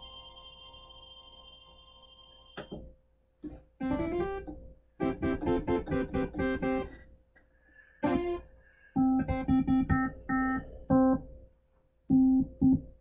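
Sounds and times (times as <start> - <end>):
synthesizer plucked notes: 3.8 - 7.0, 8.0 - 11.3.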